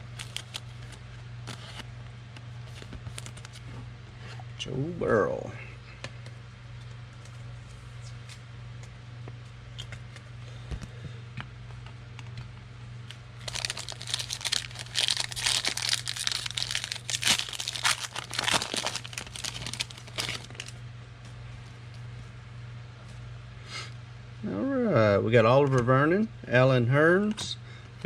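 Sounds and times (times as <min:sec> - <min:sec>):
wrapper tearing and crinkling: 0:00.0 - 0:01.6, 0:13.4 - 0:20.8
steady low hum: 0:00.0 - 0:28.0.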